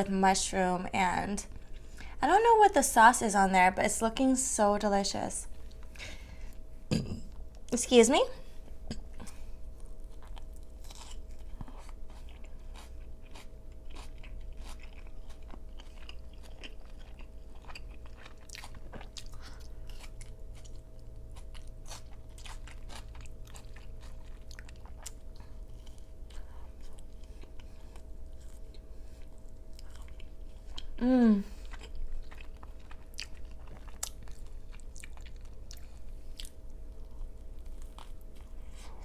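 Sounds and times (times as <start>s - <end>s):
person chewing and biting: 9.8s - 30.9s, 31.6s - 39.0s.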